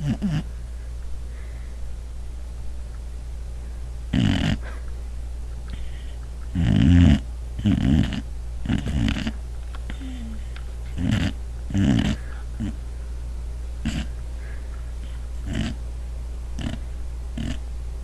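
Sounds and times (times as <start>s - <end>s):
dog snoring: 0.0s - 0.5s, 4.1s - 4.7s, 5.7s - 12.8s, 13.8s - 14.2s, 15.0s - 15.8s, 16.6s - 16.8s, 17.4s - 17.6s
steady low hum: 0.0s - 18.0s.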